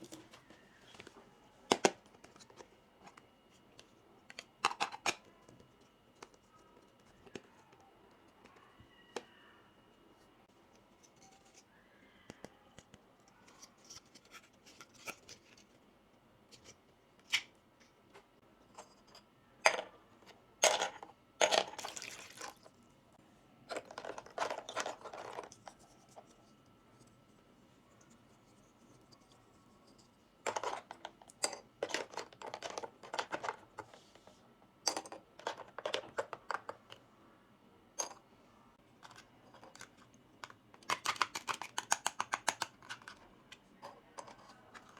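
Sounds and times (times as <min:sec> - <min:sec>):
plastic toy pieces clicking: 0:40.4 - 0:43.2.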